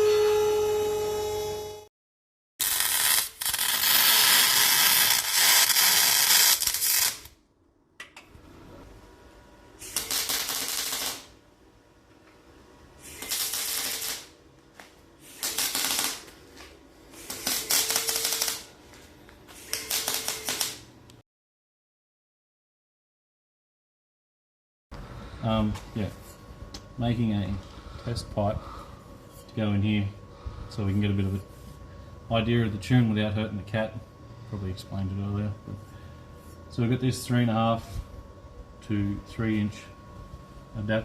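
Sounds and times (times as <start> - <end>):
welding crackling and spattering: 2.6 - 7.4, 9.8 - 11.4, 13.0 - 18.7, 19.6 - 21.0.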